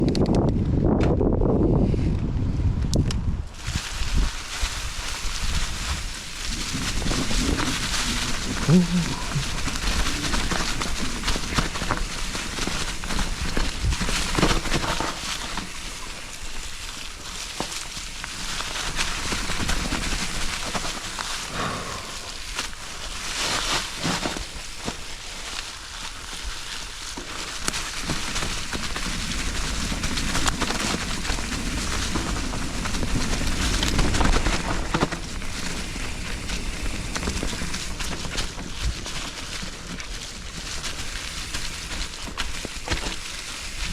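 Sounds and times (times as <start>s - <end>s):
wind rumble on microphone: 0.0s - 17.2s, 27.6s - 43.9s
tyres crackling over gravel: 3.5s - 43.9s
bike knocks and rattles: 9.4s - 21.2s, 27.1s - 43.9s.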